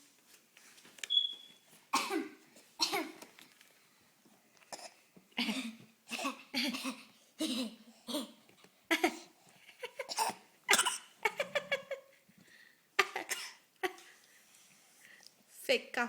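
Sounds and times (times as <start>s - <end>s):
baby fake coughing: 1.9s - 3.2s, 4.7s - 8.4s, 10.0s - 11.4s, 13.2s - 13.6s.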